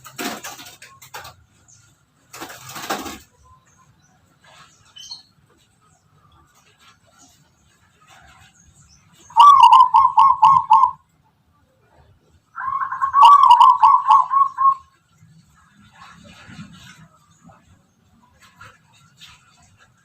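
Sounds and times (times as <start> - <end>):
dove cooing: 9.2 - 11.0, 12.6 - 14.9.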